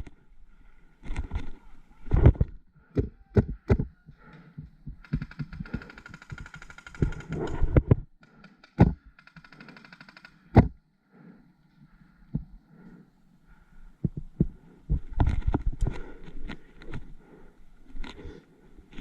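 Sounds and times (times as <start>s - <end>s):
paintball markers firing full-auto: 5.0s - 7.4s, 8.5s - 10.7s.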